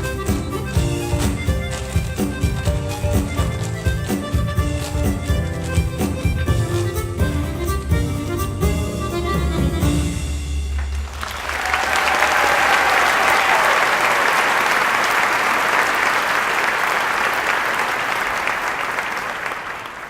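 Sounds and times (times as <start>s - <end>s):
dance music: 0.0s - 10.4s
audience applauding: 10.8s - 20.0s.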